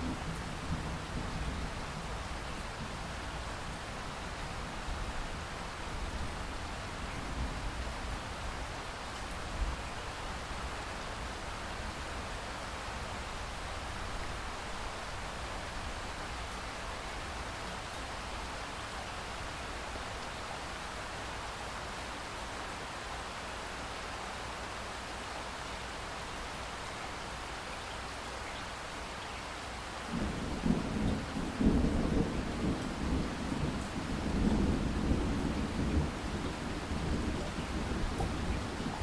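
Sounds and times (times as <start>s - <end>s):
steady rain hissing: 0.0s - 39.0s
thunder rumbling: 30.1s - 39.0s.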